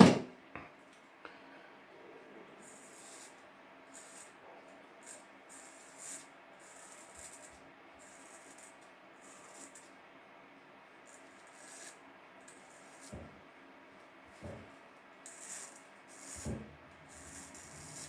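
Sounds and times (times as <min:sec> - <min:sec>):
razor blade scraping stubble: 0:02.6 - 0:04.4, 0:15.2 - 0:18.0.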